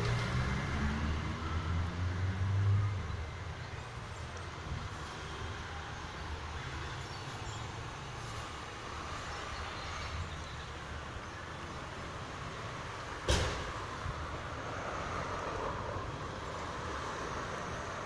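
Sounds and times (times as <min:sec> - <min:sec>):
sharp knock: 0:13.3 - 0:13.7.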